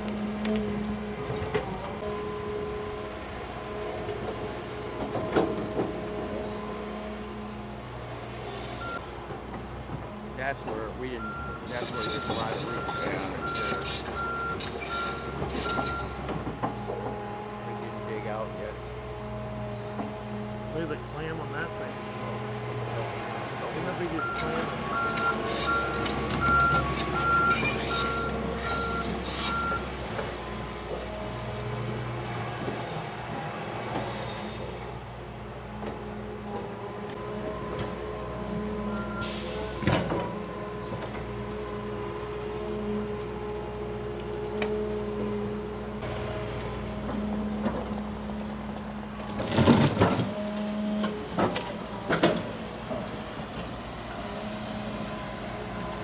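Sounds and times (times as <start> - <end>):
excavator diesel engine running: 0.0 - 56.0
travel alarm beeping: 8.8 - 9.0, 11.2 - 16.2, 24.2 - 29.8, 38.9 - 39.4.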